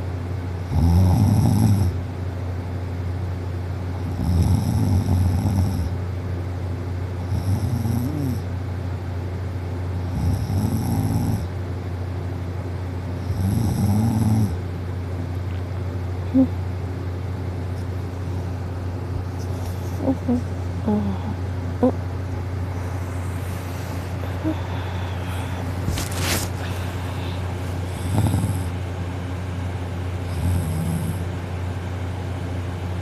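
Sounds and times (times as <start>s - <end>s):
steady low hum: 0.0s - 33.0s
girl snoring: 0.7s - 2.0s, 4.1s - 5.9s, 7.3s - 8.5s, 10.1s - 11.5s, 13.3s - 14.6s, 16.3s - 16.6s, 20.0s - 22.0s, 22.8s - 28.8s, 30.2s - 31.3s.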